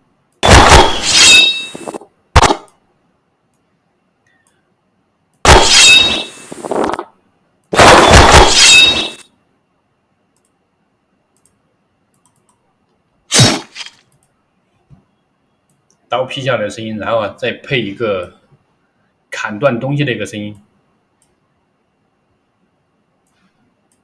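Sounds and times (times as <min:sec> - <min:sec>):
blade chop with metallic ring: 0:00.4 - 0:02.6, 0:05.5 - 0:06.4, 0:07.8 - 0:09.2
short sharp hit: 0:05.5 - 0:06.9, 0:13.3 - 0:13.9.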